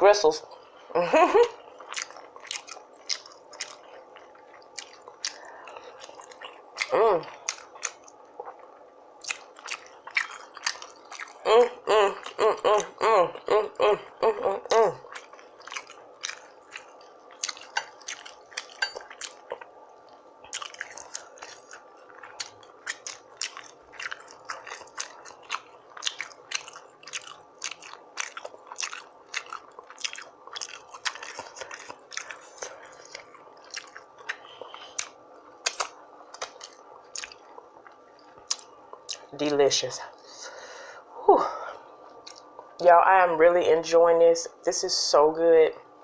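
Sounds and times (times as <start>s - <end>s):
wet chewing and lip smacking: 1.7s - 11.4s, 14.6s - 39.3s, 42.0s - 42.7s.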